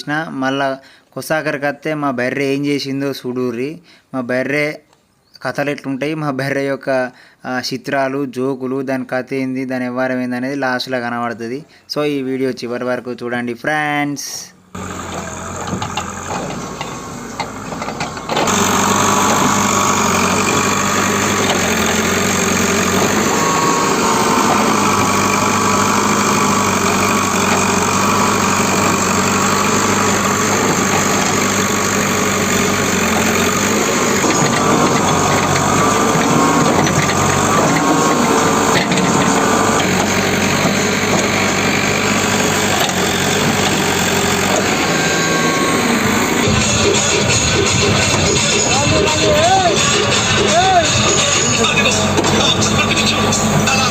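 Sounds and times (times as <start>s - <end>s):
diesel engines running: 14.6s - 53.9s.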